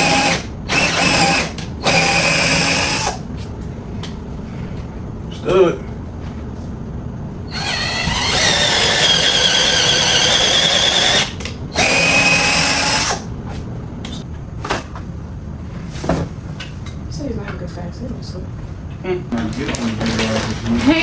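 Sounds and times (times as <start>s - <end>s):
power drill drilling into wood: 0.0s - 3.2s, 7.5s - 13.2s.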